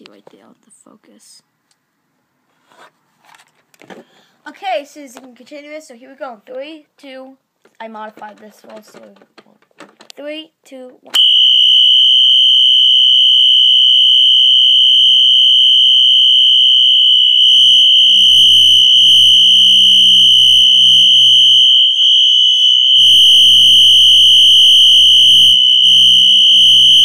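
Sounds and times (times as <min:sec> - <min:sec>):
fire alarm horn steady high tone: 0:11.2 - 0:27.0.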